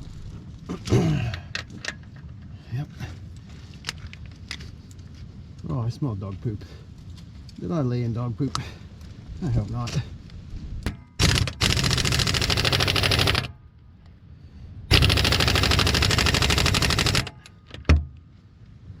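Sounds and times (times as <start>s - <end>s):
impact wrench hammering: 10.9s - 13.5s, 14.9s - 18.0s.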